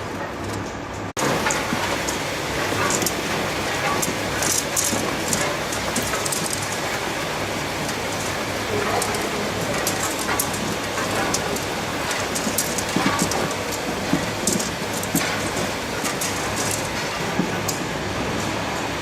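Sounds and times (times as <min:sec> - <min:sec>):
machinery rattling and clicking: 0:00.0 - 0:19.0.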